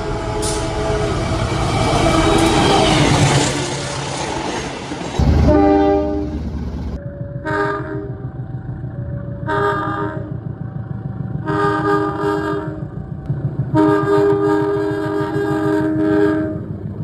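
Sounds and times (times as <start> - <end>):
locomotive horn blasts: 0.0 - 2.6, 5.4 - 6.4, 7.4 - 8.2, 9.4 - 10.4, 11.4 - 13.0, 13.7 - 16.8
low rumble of train: 0.0 - 17.0.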